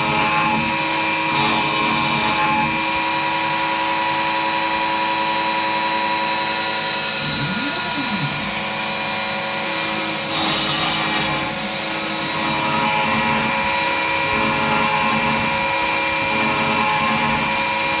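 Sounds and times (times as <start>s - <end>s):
machine motor whine: 5.0s - 17.8s.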